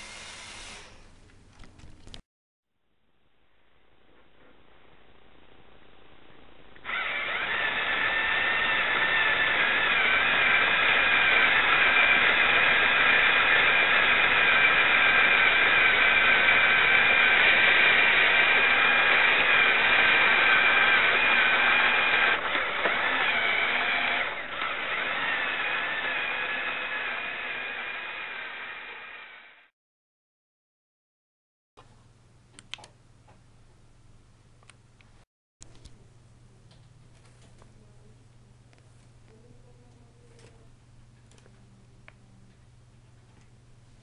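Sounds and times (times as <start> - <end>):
toy electric motors whining: 6.8 - 29.4.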